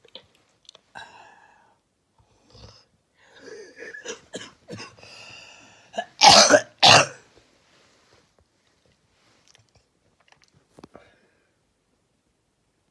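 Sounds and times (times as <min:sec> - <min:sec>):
person clearing throat: 0:03.4 - 0:05.0, 0:06.0 - 0:07.2
person coughing loudly: 0:03.4 - 0:05.1, 0:06.0 - 0:07.2.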